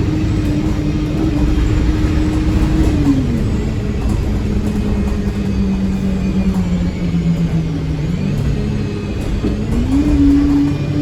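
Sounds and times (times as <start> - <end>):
bus diesel engine accelerating: 0.0 - 11.0.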